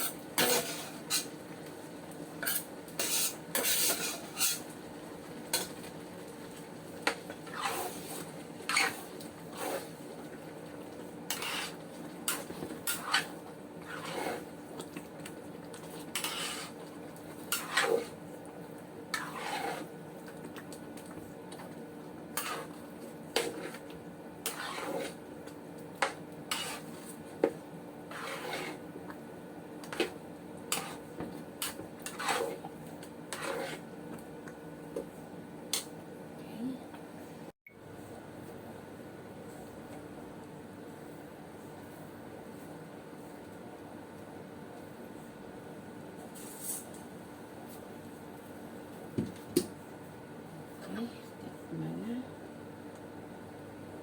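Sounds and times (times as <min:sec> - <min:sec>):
utensil scraping a cooking pot: 0:00.0 - 0:01.4, 0:02.4 - 0:04.7, 0:07.0 - 0:10.3, 0:11.2 - 0:15.0, 0:15.7 - 0:18.2, 0:19.1 - 0:20.0, 0:22.3 - 0:25.3, 0:26.0 - 0:27.2, 0:28.0 - 0:28.9, 0:29.8 - 0:32.7, 0:33.3 - 0:34.0.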